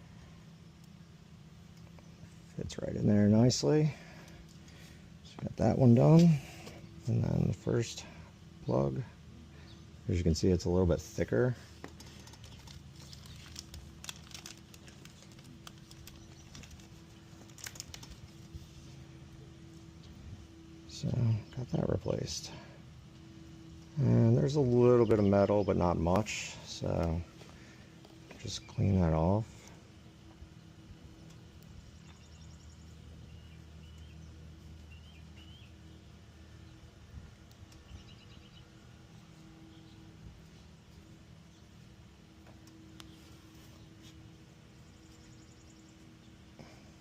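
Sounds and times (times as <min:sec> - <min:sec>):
low steady hum: 0:00.0 - 0:47.0
small parts clicking and tapping: 0:11.8 - 0:18.3.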